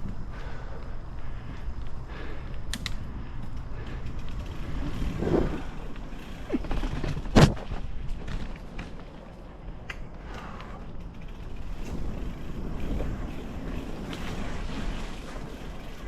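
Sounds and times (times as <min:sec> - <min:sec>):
bike tyres rumbling on trail: 0:00.0 - 0:16.0
bike knocks and clanks: 0:03.9 - 0:14.5.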